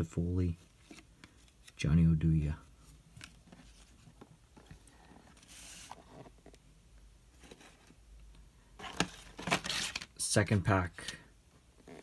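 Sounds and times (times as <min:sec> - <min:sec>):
packaging rustle: 0:08.8 - 0:10.2.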